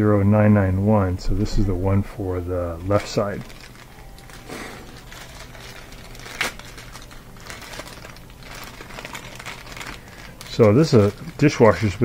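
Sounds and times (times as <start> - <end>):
plastic parts rustling and clicking: 2.7 - 12.0.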